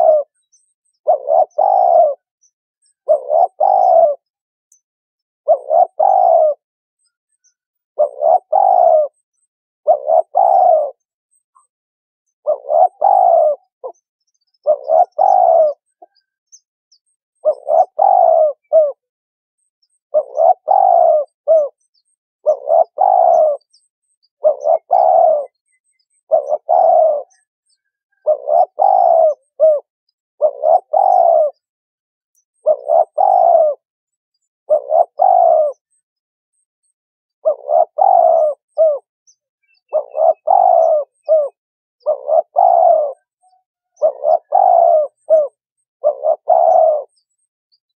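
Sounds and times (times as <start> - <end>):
doves cooing: 0.0 - 0.4, 1.0 - 2.3, 3.0 - 4.3, 5.4 - 6.6, 8.0 - 9.2, 9.8 - 11.1, 12.4 - 16.2, 17.4 - 19.1, 20.1 - 21.8, 22.4 - 23.8, 24.4 - 27.4, 28.2 - 31.7, 32.6 - 33.8, 34.7 - 35.9, 37.4 - 39.1, 39.8 - 47.1.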